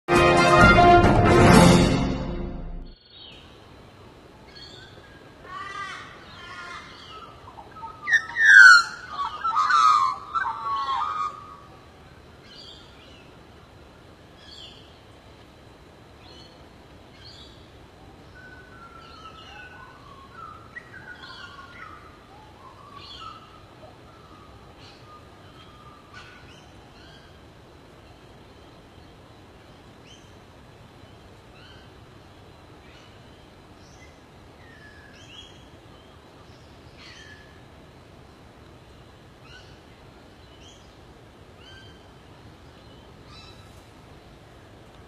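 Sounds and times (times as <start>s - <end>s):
birds chirping and calling: 4.6s - 11.8s, 18.4s - 27.4s.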